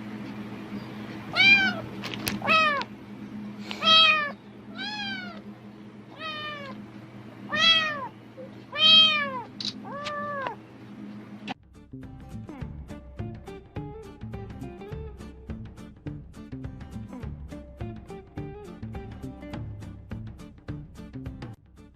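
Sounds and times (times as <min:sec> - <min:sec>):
cat meowing: 0:01.3 - 0:02.9, 0:03.8 - 0:05.4, 0:06.1 - 0:06.8, 0:07.5 - 0:08.1, 0:08.7 - 0:10.6.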